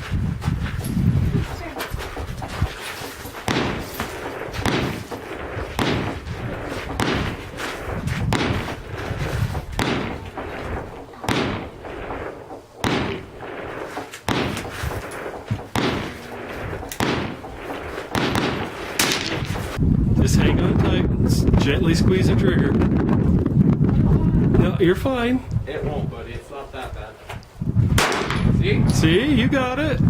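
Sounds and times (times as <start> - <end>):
gunshots echoing: 1.6 - 19.8, 28.0 - 28.6.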